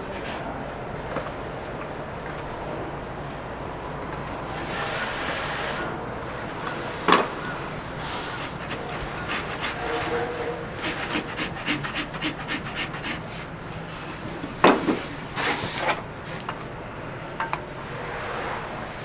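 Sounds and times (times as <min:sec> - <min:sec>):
rasp filing a hoof: 0:06.9 - 0:16.6.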